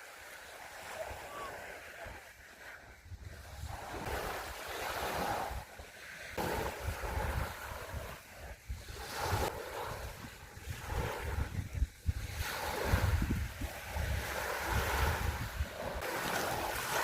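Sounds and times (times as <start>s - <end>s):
sea waves washing onto beach: 0.0s - 17.0s
wind buffeting microphone: 6.4s - 17.0s.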